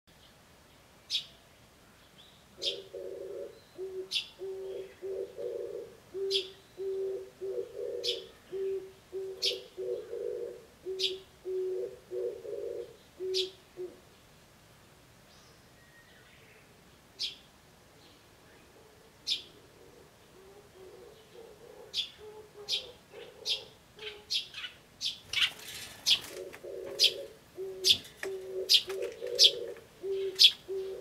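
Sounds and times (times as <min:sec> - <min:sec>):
dove cooing: 0:02.6 - 0:14.0, 0:18.8 - 0:24.7, 0:25.3 - 0:31.0
sparrow chick chirping: 0:19.2 - 0:19.6, 0:20.4 - 0:31.0.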